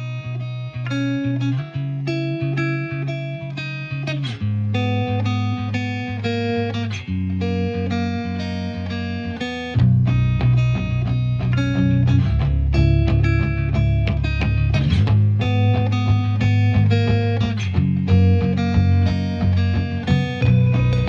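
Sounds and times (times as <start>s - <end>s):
plucked guitar: 0.0s - 21.0s
bass line: 9.8s - 21.0s.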